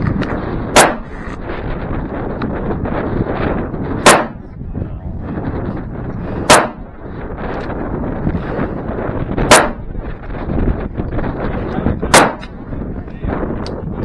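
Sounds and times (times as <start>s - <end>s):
gunshots with short ring: 0.8s - 1.0s, 4.0s - 4.4s, 6.5s - 6.8s.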